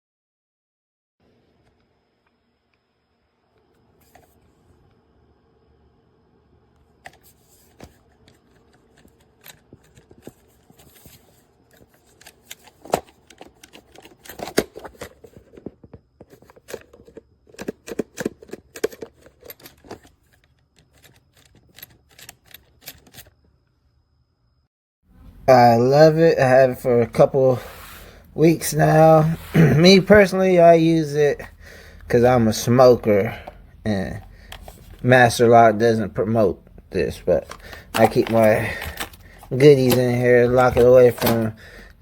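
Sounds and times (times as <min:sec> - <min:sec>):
lock box clicking and clacking: 0:16.3 - 0:23.3, 0:37.4 - 0:41.5.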